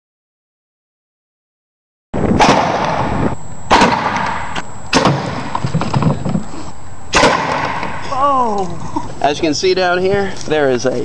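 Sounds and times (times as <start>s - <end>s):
spud gun bangs with echo: 2.4s - 3.1s, 3.7s - 5.6s, 7.1s - 8.0s.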